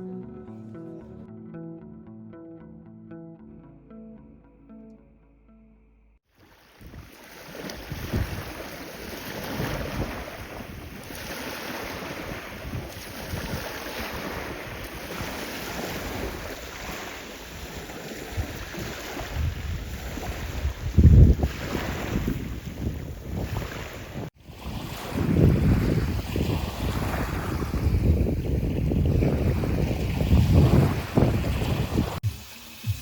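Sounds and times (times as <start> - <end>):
music: 0.0 - 6.2
sea waves: 6.3 - 33.0
wind buffeting microphone: 6.8 - 32.3.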